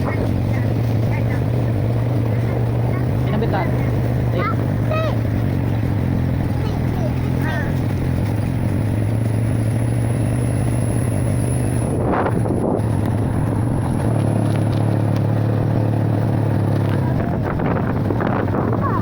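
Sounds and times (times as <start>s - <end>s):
engine running steadily: 0.0s - 19.0s.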